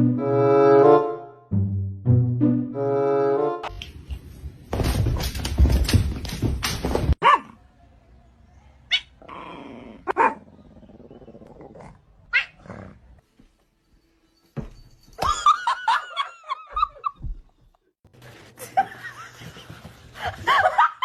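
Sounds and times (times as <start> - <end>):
dog growling and barking: 9.0 - 13.2.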